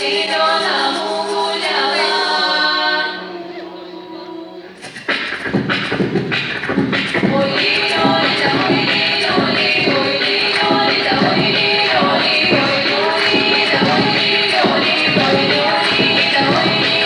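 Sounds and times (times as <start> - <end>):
vocal ensemble singing a cappella: 0.0 - 17.0
rhythmic percussive beats: 4.8 - 17.0.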